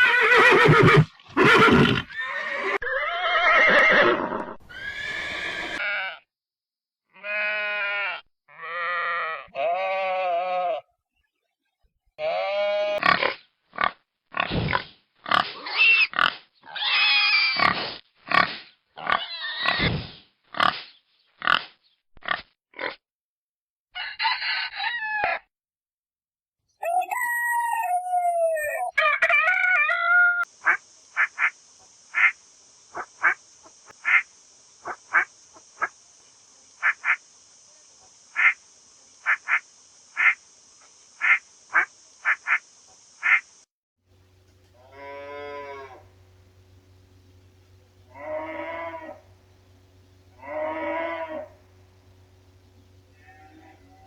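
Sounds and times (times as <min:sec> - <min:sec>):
drawn-out gliding animal call: 0:00.0 - 0:06.2, 0:44.3 - 0:54.0
pig grunts and squeals: 0:12.2 - 0:23.0
steady hiss: 0:30.5 - 0:54.0.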